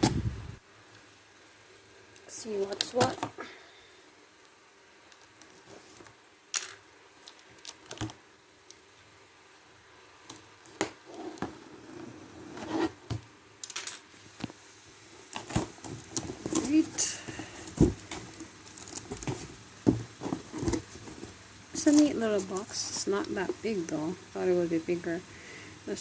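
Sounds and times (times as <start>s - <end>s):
rustling and scraping: 11.0s - 13.2s, 15.2s - 23.6s.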